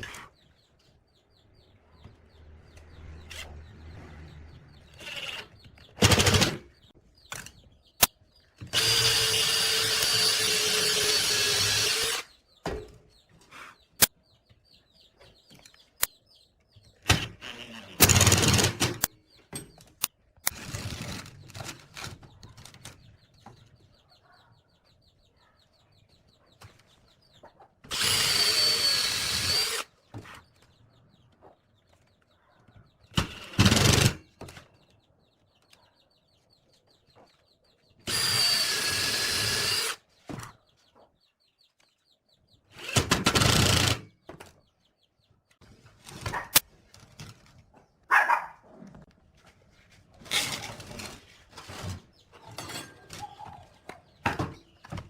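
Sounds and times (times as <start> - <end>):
power tool running in bursts: 27.9 - 29.8, 38.1 - 40.0.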